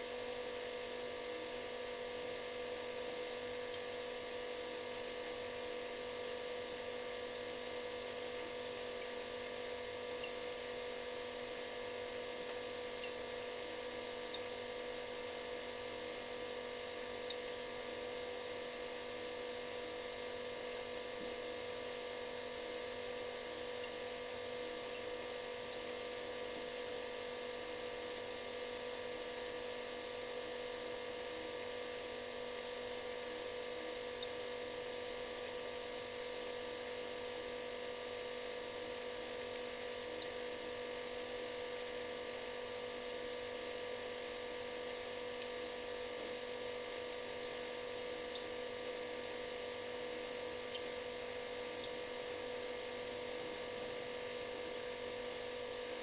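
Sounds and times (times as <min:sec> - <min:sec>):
refrigerator humming: 0:00.0 - 0:56.0.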